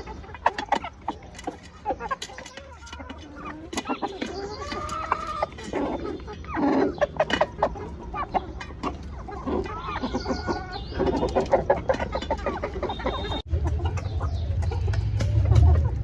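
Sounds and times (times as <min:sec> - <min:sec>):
chickens clucking: 0:00.0 - 0:16.0
steady low rumble: 0:13.5 - 0:16.0.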